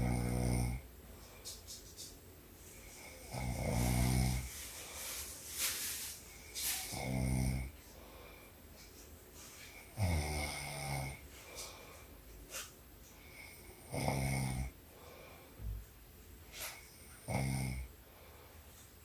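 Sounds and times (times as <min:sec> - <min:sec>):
woman snoring: 0:00.0 - 0:00.9, 0:03.0 - 0:04.5, 0:06.9 - 0:07.8, 0:09.9 - 0:11.2, 0:13.3 - 0:14.8, 0:17.2 - 0:17.9
breathy hisses: 0:02.7 - 0:08.6.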